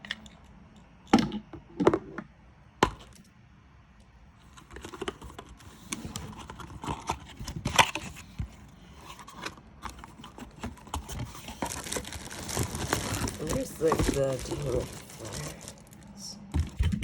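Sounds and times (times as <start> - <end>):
packaging clicks and clatter: 4.5 - 17.0
packaging rustling: 4.6 - 17.0.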